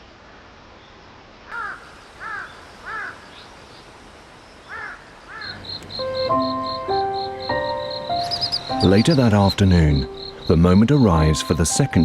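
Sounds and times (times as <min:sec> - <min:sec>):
crow cawing: 0:01.5 - 0:03.4, 0:04.7 - 0:09.2, 0:10.0 - 0:10.6.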